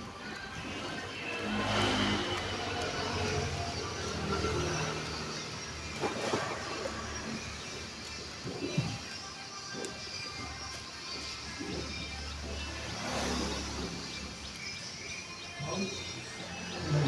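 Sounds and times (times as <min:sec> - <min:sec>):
motor vehicle engine: 0:00.0 - 0:08.3, 0:12.0 - 0:14.8.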